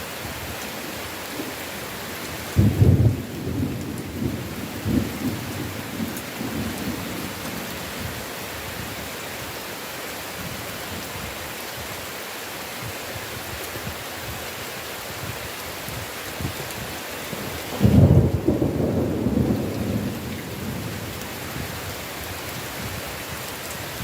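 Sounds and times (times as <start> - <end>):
steady rain: 0.0 - 24.0
thunder clap and rumbles: 2.5 - 7.6, 17.7 - 21.8.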